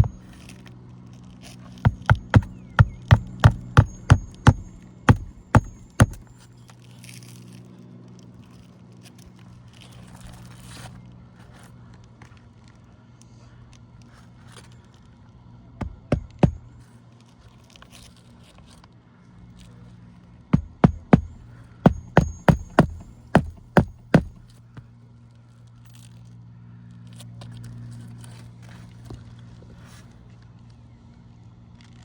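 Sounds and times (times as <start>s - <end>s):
hammer striking roofing nails: 0.0s - 0.4s, 1.8s - 6.3s, 15.8s - 16.7s, 20.6s - 24.6s
steady low hum: 0.0s - 0.7s, 1.7s - 6.5s, 15.7s - 16.8s, 20.5s - 24.8s.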